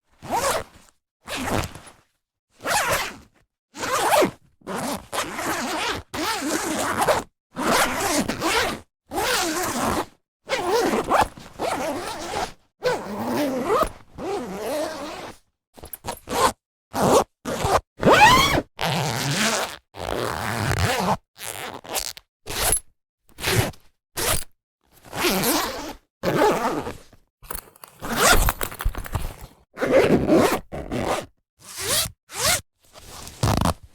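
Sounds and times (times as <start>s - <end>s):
zippers rasping open and shut: 0.2s - 0.6s, 1.3s - 1.8s, 2.7s - 3.1s, 3.8s - 10.0s, 10.6s - 33.9s.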